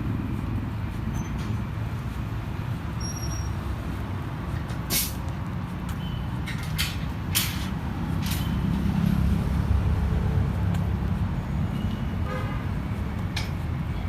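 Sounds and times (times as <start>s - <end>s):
heavy vehicle engines running: 0.0s - 14.0s
short air hisses: 4.9s - 5.2s
vehicle horn toot: 11.7s - 12.7s.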